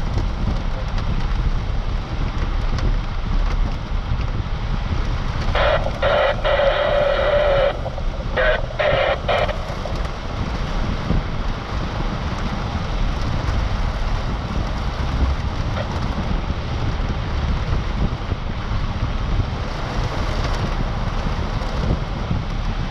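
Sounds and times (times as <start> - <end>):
vehicle driving in rain: 0.0 - 22.9
wind on microphone: 0.0 - 22.9
horn-like tone: 5.6 - 10.0.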